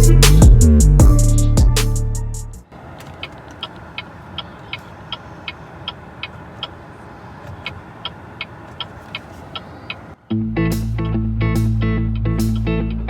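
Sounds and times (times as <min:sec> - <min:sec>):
low car hum: 0:00.0 - 0:13.0
turn signal ticking: 0:02.6 - 0:10.2.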